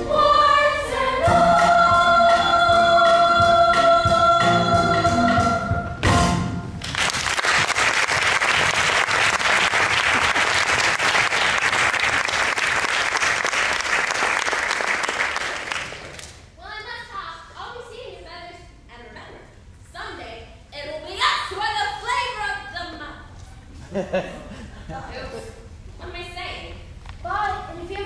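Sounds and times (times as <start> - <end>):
voices singing held note: 0.0 - 5.9
musical accompaniment: 0.0 - 6.8
audience applauding: 6.8 - 16.4.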